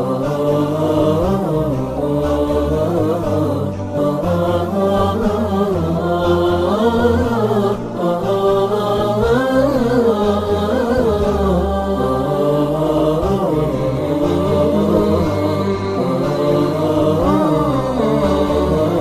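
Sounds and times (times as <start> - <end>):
low sustained drone: 0.0 - 19.0
wordless vocal chanting: 0.0 - 19.0.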